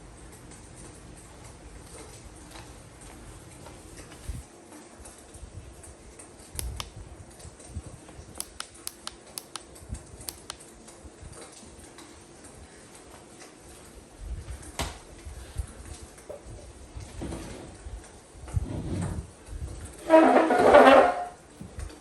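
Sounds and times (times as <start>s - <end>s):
faint steady hum: 0.0s - 20.3s
sharp clicks and taps: 6.6s - 6.9s, 8.4s - 9.7s, 10.3s - 10.6s.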